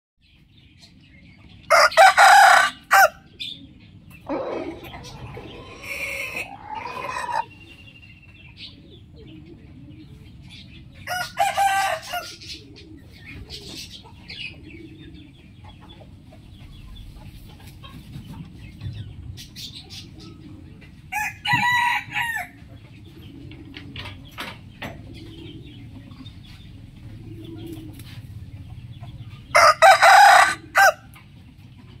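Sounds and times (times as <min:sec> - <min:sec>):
rooster crowing: 0:01.7 - 0:03.2, 0:11.1 - 0:12.3, 0:21.1 - 0:22.6, 0:29.6 - 0:31.1.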